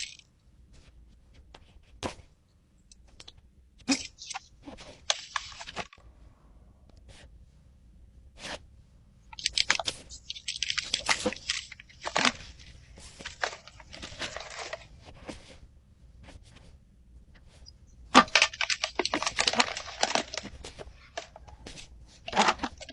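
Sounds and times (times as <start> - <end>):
paper packaging crinkling and tearing: 3.9 - 6.0, 9.4 - 15.1, 18.2 - 21.5, 22.2 - 22.9.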